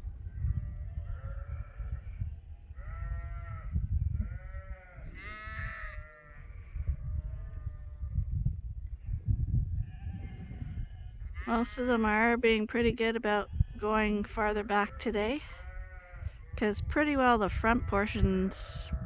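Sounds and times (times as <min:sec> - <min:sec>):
sheep bleating: 0:02.8 - 0:07.9, 0:13.4 - 0:16.4.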